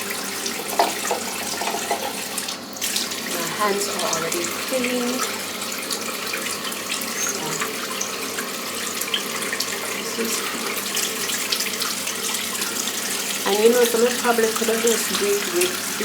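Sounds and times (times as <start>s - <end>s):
tap running into sink: 0.0s - 16.0s.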